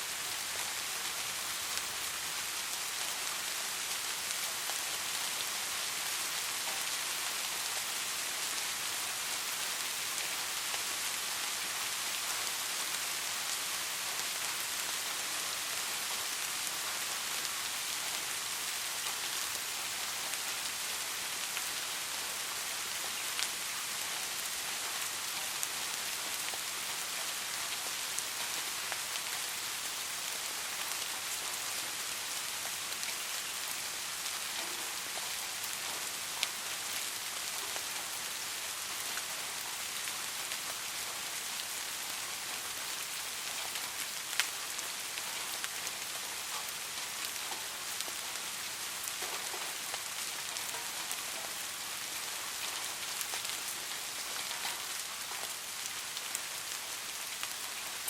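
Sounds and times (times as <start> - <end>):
steady rain: 0.0 - 58.0
raindrops striking surface: 15.9 - 58.0.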